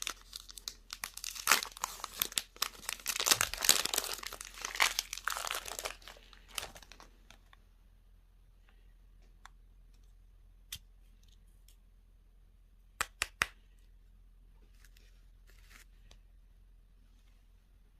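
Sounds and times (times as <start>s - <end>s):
packaging crinkle: 0.0s - 7.4s.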